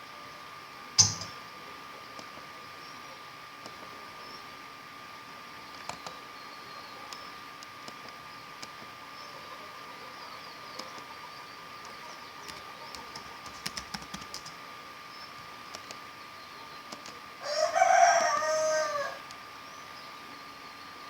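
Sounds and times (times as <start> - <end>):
rooster crowing: 17.4 - 19.3.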